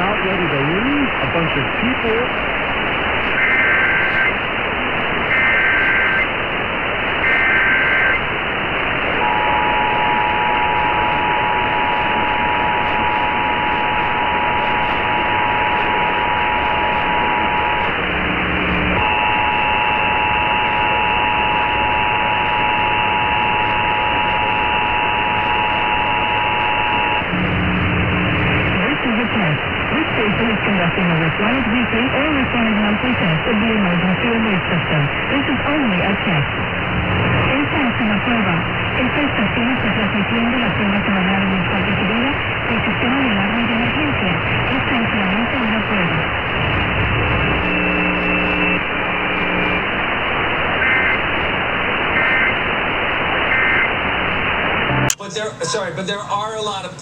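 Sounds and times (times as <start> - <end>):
radio hiss: 0.0 - 57.0
screeching data bursts: 3.3 - 4.4, 5.3 - 6.3, 7.2 - 8.2, 9.2 - 28.7, 46.5 - 49.8
low buzz: 9.0 - 28.8, 36.4 - 37.6, 38.2 - 39.1, 41.6 - 51.6, 54.7 - 55.2
two-tone attention signal: 9.2 - 17.8, 54.9 - 55.8.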